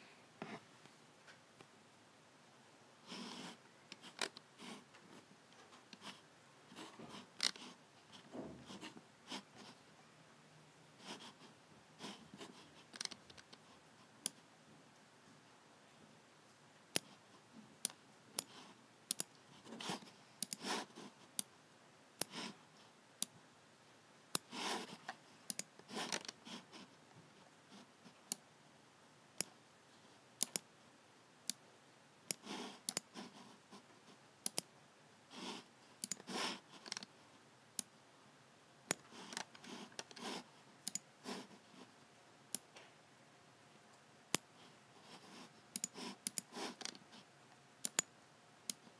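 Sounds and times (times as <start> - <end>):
computer mouse buttons clicking: 16.9 - 17.2, 17.8 - 19.4, 20.4 - 20.7, 24.4 - 26.4, 30.4 - 30.7, 32.3 - 33.2, 34.4 - 34.7, 36.0 - 37.1, 38.9 - 41.1, 45.7 - 47.0, 47.8 - 48.1.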